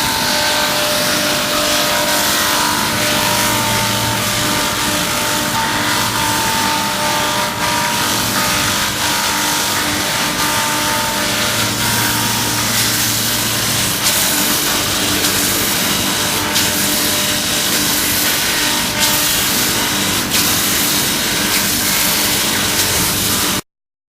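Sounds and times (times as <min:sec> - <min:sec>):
grinding machine motor humming: 0:00.0 - 0:23.6
abrasive grinding hiss: 0:10.9 - 0:23.3.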